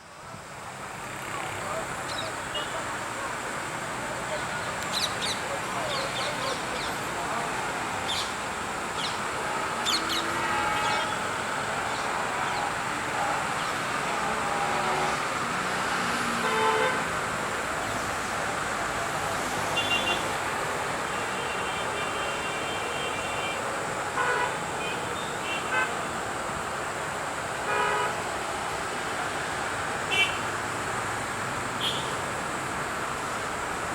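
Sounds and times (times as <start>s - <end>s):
traffic noise: 0.0s - 33.9s
vehicle horn toots: 9.4s - 11.4s, 16.4s - 17.1s, 24.2s - 26.0s, 27.6s - 28.2s, 31.8s - 32.2s.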